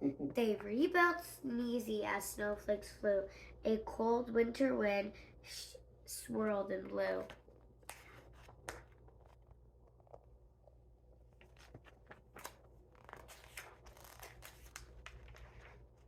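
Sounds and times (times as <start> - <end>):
low steady hum: 0.0 - 16.0
paper pages rustling and turning: 7.2 - 9.6, 11.3 - 16.0.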